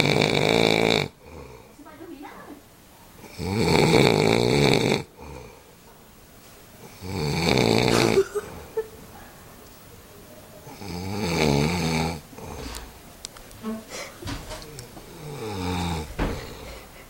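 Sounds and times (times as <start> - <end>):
loud rasping snoring: 0.0 - 1.7, 3.2 - 5.6, 6.8 - 8.2, 10.7 - 12.9, 15.1 - 16.6.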